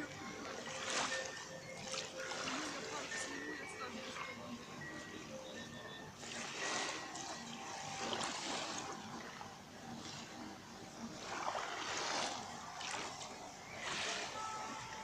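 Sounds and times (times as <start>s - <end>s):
small waves washing ashore: 0.0s - 15.0s.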